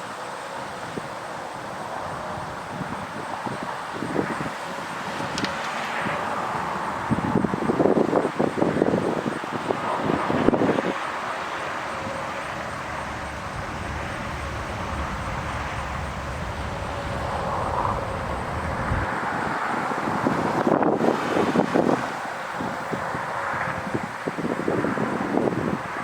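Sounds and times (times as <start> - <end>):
wind buffeting microphone: 0.5 - 26.0
warning siren winding down: 10.0 - 20.8
low rumble: 10.0 - 21.3.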